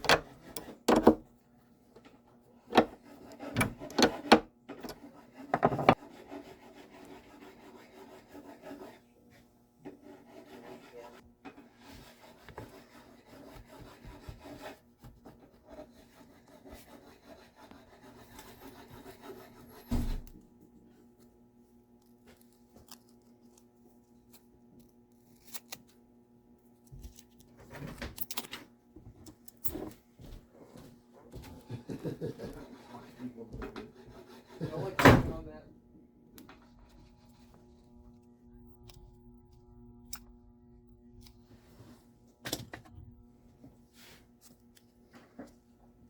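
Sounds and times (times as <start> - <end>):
sanding guitar wood by hand: 5.0 - 9.1, 9.9 - 14.8, 15.4 - 19.8, 32.0 - 35.0.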